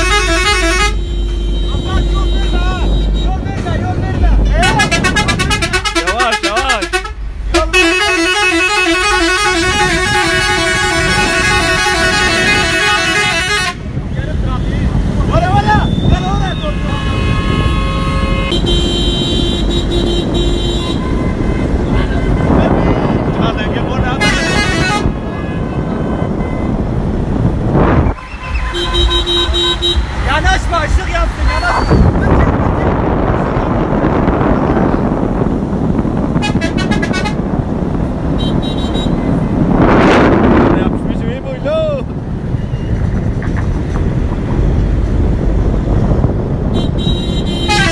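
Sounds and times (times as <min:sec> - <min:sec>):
musical air horn tune: 0:00.0 - 0:03.3, 0:04.6 - 0:13.8, 0:24.2 - 0:25.1, 0:28.1 - 0:30.1, 0:46.8 - 0:47.9
low vehicle rumble: 0:00.0 - 0:47.9
traffic and engine noise: 0:00.0 - 0:47.9
air horn short toots: 0:24.2 - 0:25.1, 0:46.8 - 0:47.9.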